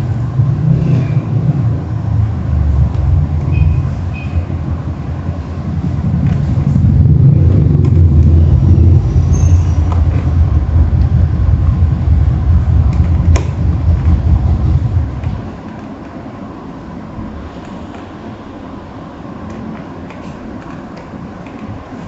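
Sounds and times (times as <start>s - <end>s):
vehicle engine rumbling: 0.0s - 17.5s.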